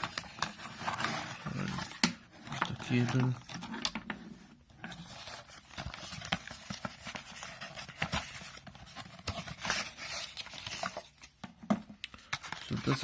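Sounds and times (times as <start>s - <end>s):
packaging rustling: 0.0s - 13.0s.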